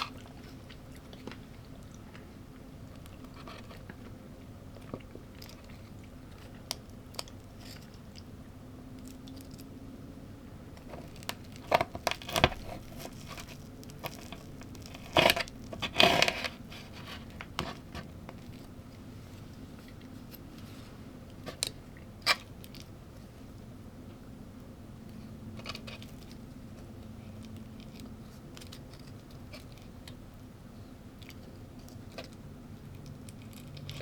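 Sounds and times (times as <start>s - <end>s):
person chewing crunchy food: 0.0s - 8.4s, 31.2s - 34.0s
faint steady hum: 0.0s - 34.0s.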